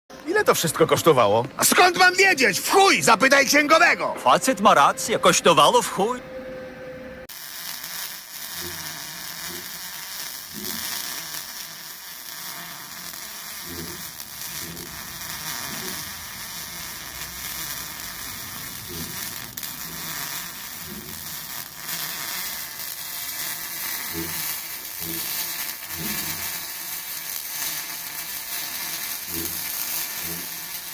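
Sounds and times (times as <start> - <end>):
welding arc sizzling hiss: 7.3 - 30.9.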